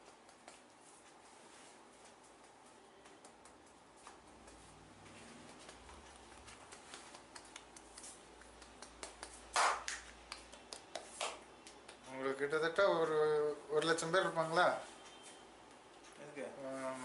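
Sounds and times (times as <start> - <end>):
hands rubbing skin: 0.0 - 12.1.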